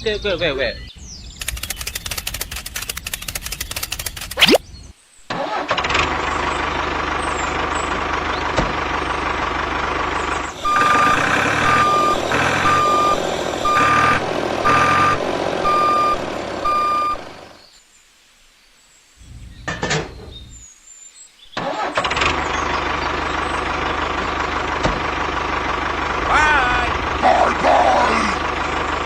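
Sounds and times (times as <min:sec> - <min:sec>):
truck engine running: 0:05.8 - 0:17.6, 0:22.0 - 0:29.0
reversing alarm beeping: 0:10.5 - 0:17.4.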